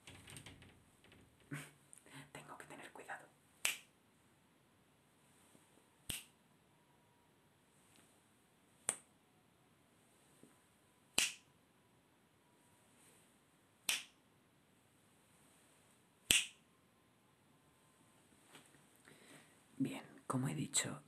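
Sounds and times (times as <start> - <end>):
finger snaps: 3.6 - 3.9, 6.1 - 6.3, 8.9 - 9.1, 11.2 - 11.5, 13.9 - 14.2, 16.3 - 16.6.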